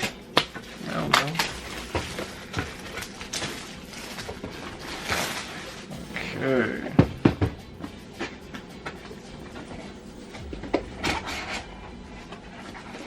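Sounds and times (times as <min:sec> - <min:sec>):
crinkly rustle: 0:00.0 - 0:06.4.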